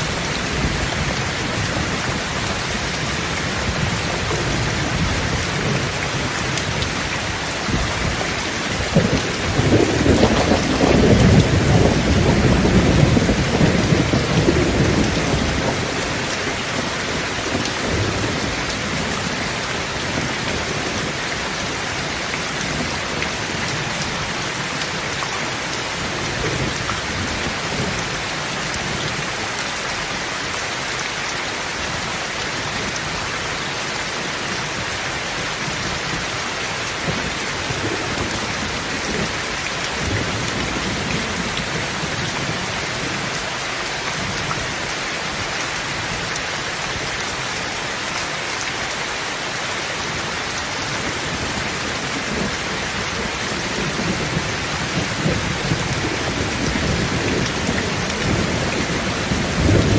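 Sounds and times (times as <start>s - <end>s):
steady rain falling: 0.0s - 59.9s
rolling thunder: 3.3s - 21.4s, 51.0s - 59.9s.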